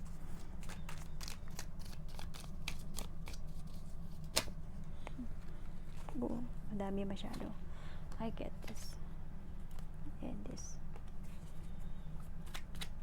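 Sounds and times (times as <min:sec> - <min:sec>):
cards being shuffled: 0:00.3 - 0:04.6, 0:12.4 - 0:12.9.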